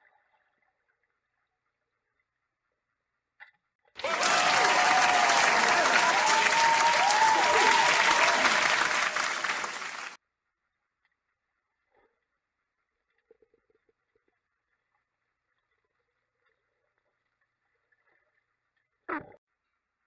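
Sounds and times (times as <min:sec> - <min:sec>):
crowd applause and cheering: 0:04.0 - 0:10.2.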